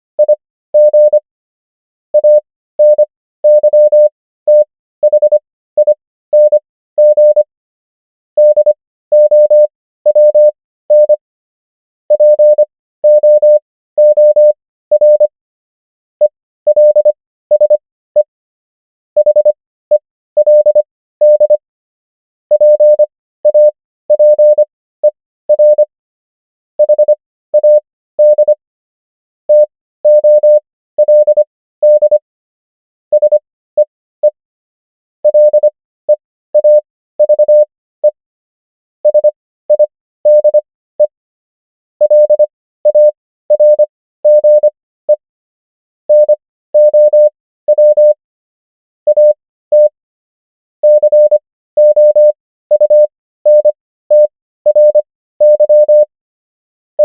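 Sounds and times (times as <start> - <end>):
morse code beeps: 0.2 - 1.2, 2.2 - 7.5, 8.4 - 11.2, 12.1 - 15.3, 16.7 - 18.3, 19.2 - 21.6, 22.5 - 25.9, 26.8 - 28.6, 29.5 - 32.2, 33.1 - 34.4, 35.2 - 38.2, 39.0 - 41.1, 42.0 - 45.2, 46.1 - 48.2, 49.1 - 50.0, 50.8 - 56.1.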